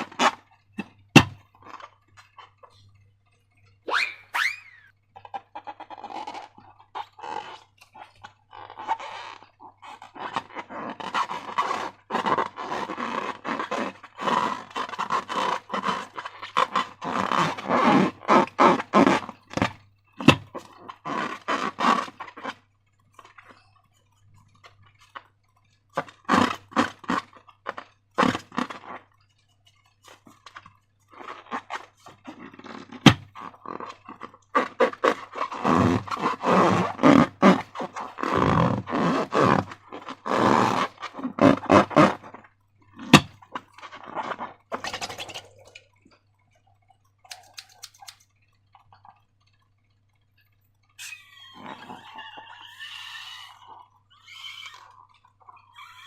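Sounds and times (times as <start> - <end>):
slime squelching and crackling: 5.1 - 56.0
sharp clicks: 47.3 - 48.3.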